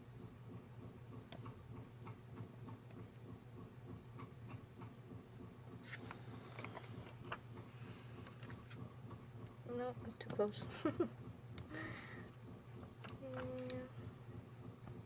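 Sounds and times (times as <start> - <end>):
paper handling clicks and taps: 5.8 - 7.5.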